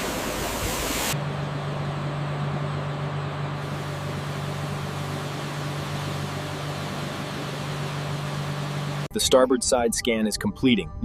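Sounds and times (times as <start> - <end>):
mechanical drone with hiss: 0.0 - 1.5, 3.5 - 9.1.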